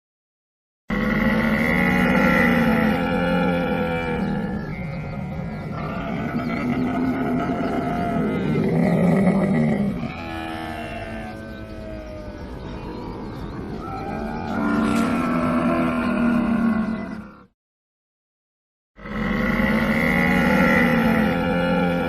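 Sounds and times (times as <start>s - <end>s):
camel groaning: 0.9s - 17.5s, 19.0s - 22.0s.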